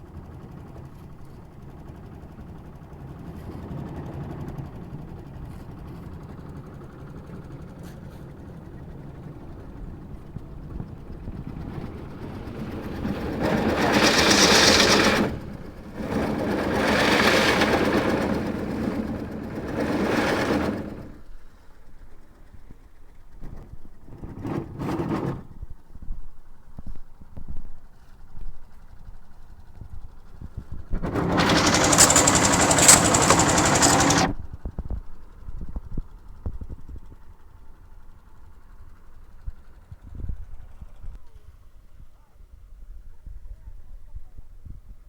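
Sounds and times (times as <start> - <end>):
motor running with low rumble: 0.0 - 25.6, 26.7 - 34.4.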